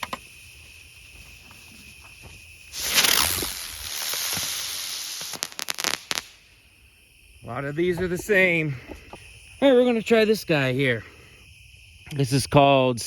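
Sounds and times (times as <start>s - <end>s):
firework hissing: 0.0s - 12.0s
crickets chirping: 0.0s - 13.0s
firework cracks: 1.9s - 7.2s.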